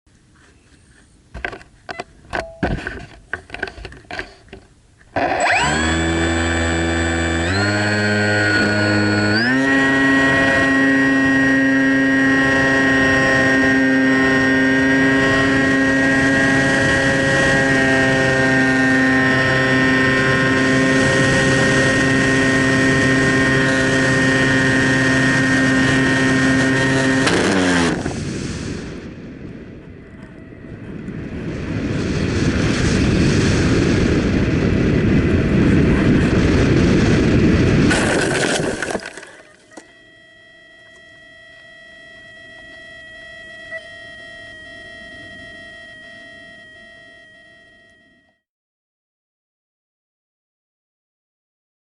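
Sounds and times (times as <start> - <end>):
drone propellers whining: 5.1 - 48.4
rushing wind-like noise: 12.4 - 38.9.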